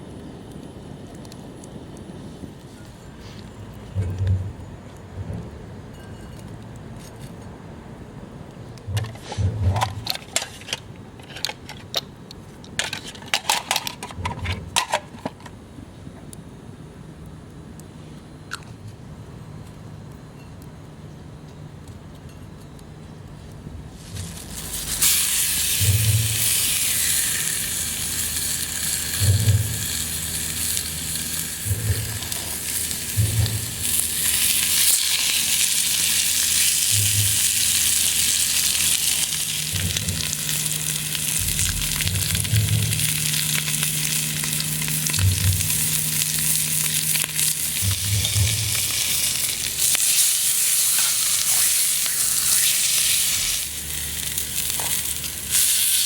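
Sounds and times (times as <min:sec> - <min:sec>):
meat sizzling in a skillet: 0:24.3 - 0:56.0
low thuds: 0:41.4 - 0:43.3.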